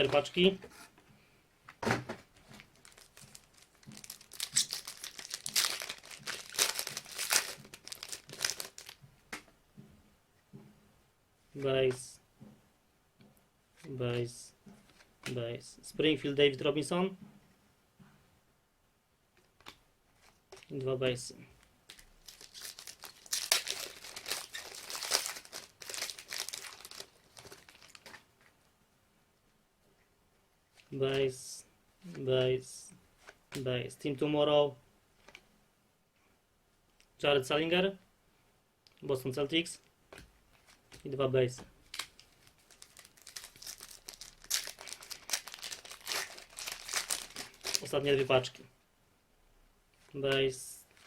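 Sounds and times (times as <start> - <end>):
wrapper torn and crinkled: 2.7 - 9.0, 21.9 - 28.2, 41.9 - 48.0.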